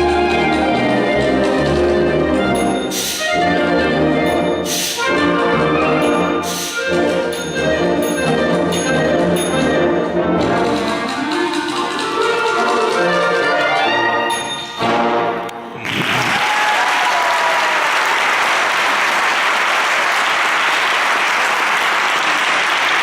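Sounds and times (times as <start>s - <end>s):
concert wind band playing: 0.0s - 15.8s.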